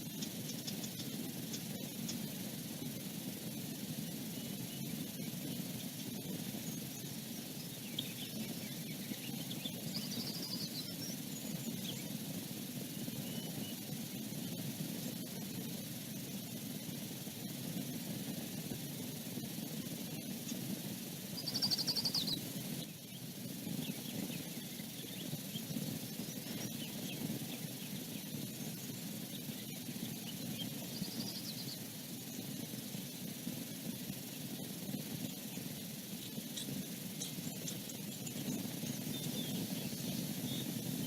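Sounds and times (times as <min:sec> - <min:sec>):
bird chittering: 0:00.0 - 0:02.4, 0:04.4 - 0:12.2, 0:21.3 - 0:22.9, 0:23.8 - 0:31.9, 0:35.3 - 0:40.8
faint bird chirps: 0:00.0 - 0:17.1, 0:17.8 - 0:33.3, 0:34.1 - 0:41.0
outdoor background hiss: 0:00.0 - 0:41.0.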